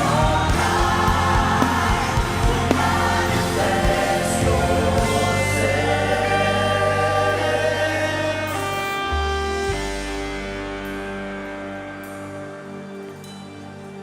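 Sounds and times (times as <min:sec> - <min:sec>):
choir singing over a band: 0:00.0 - 0:09.9
held keyboard chords: 0:00.0 - 0:14.0.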